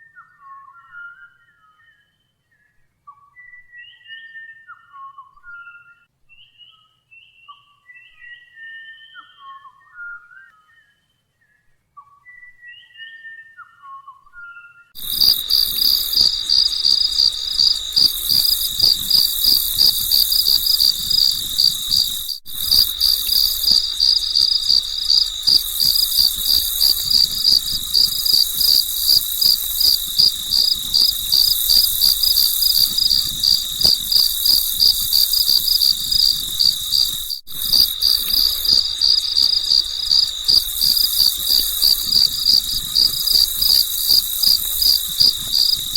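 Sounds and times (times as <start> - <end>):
crickets chirping: 15.0 - 45.9.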